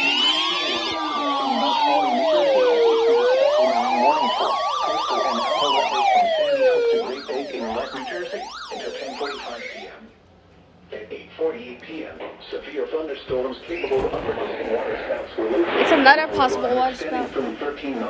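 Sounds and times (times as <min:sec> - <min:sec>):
fast yelping siren sweeps: 0:00.0 - 0:10.1
slow wailing siren: 0:00.0 - 0:10.1.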